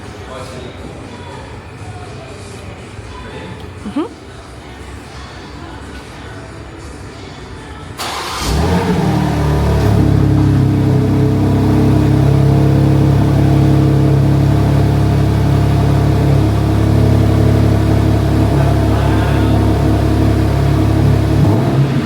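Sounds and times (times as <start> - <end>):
car engine starting and idling: 8.0 - 22.0.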